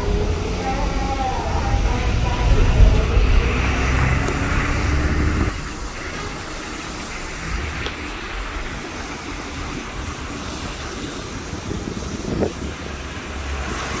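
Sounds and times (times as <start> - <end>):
low rumble: 0.0 - 10.3
waterfall roaring: 0.0 - 14.0.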